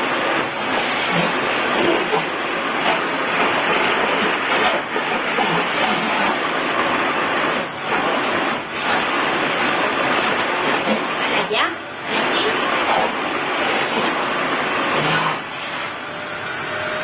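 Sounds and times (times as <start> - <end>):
vacuum cleaner running: 0.0 - 17.0.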